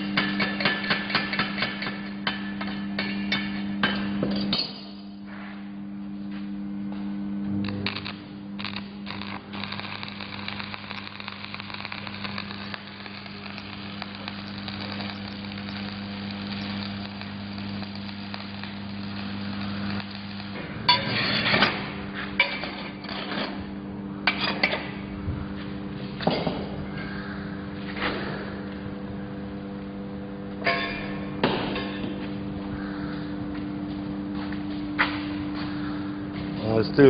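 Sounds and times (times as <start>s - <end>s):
welding arc crackling and sizzling: 0.0s - 5.0s, 7.4s - 26.8s
welding machine hum: 0.0s - 5.3s, 6.1s - 37.0s.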